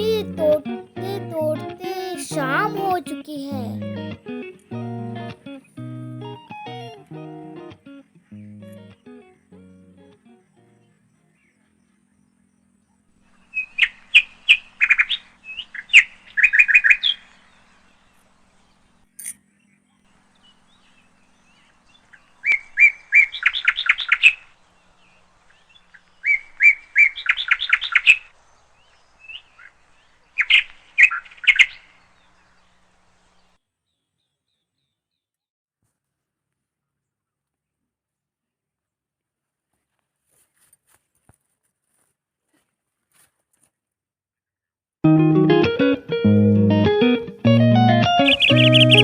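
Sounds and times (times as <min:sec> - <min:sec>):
songbird chirping: 0:06.4 - 0:35.3, 0:47.0 - 0:49.0.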